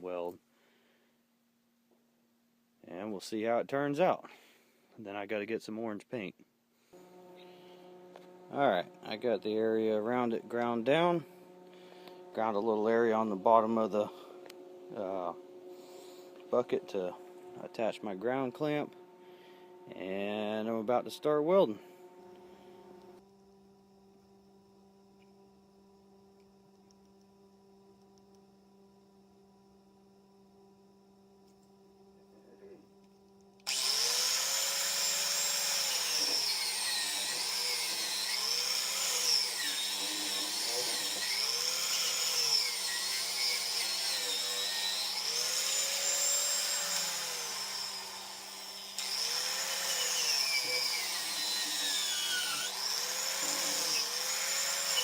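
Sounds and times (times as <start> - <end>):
power tool on metal: 33.6 - 55.0.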